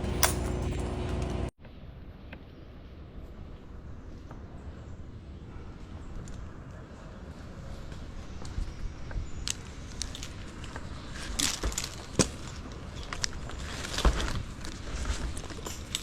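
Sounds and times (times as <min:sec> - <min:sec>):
twigs rustling and snapping: 0:08.4 - 0:16.0
sharp cracks of branches: 0:09.4 - 0:16.0.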